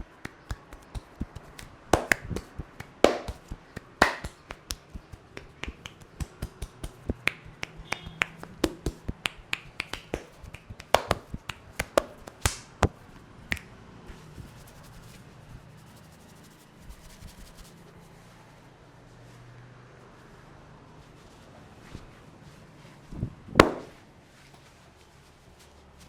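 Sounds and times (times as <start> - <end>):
hands slapping a head: 0.0 - 13.7, 23.6 - 24.0.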